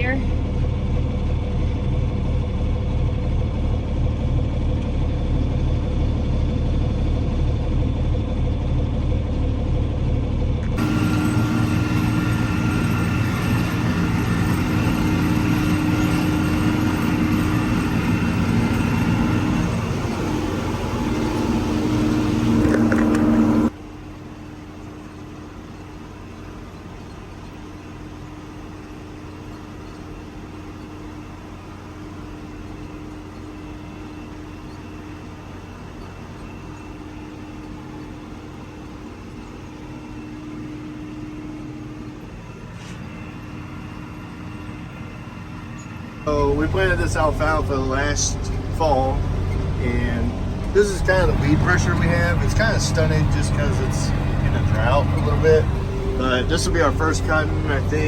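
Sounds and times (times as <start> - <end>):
vehicle engine running: 0.0 - 58.0.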